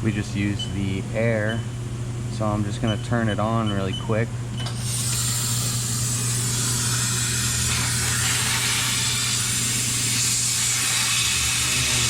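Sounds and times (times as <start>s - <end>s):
compressed air hissing: 4.8s - 12.0s.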